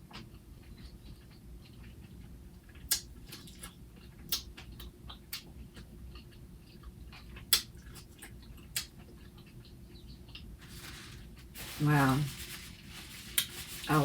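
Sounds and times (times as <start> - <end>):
chewing crunchy sandwich: 0.0 - 11.5.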